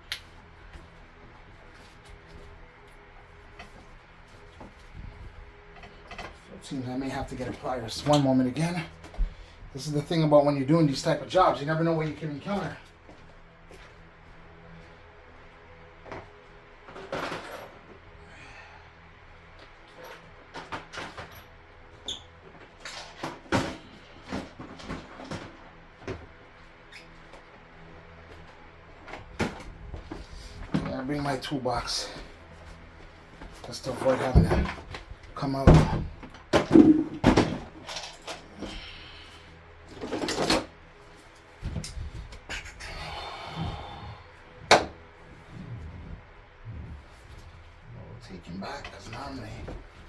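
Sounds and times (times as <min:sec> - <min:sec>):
tools rummaged in toolbox: 0:16.9 - 0:17.8.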